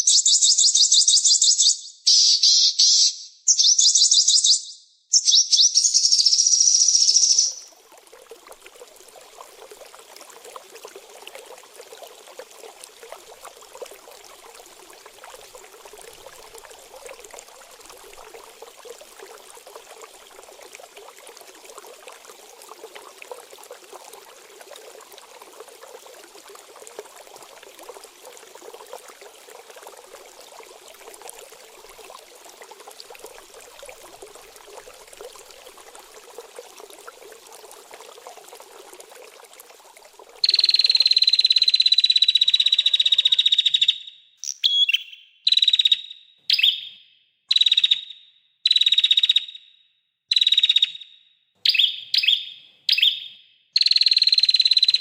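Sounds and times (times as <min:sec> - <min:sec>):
trickling water: 0:05.1 - 0:46.9, 0:47.5 - 0:48.0, 0:53.8 - 0:55.0.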